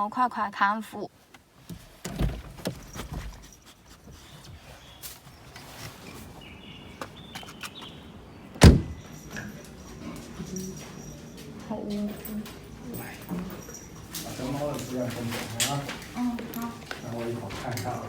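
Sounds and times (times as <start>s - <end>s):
loud sharp thump: 8.6s - 9.0s.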